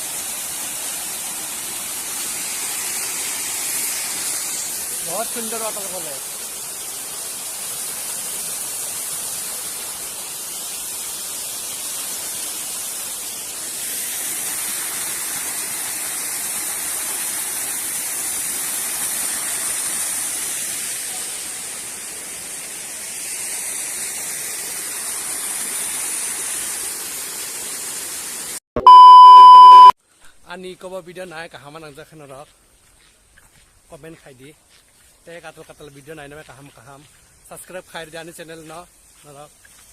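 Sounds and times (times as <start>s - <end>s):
small waterfall splashing: 0.0s - 28.6s
loud electronic beep: 28.8s - 30.0s.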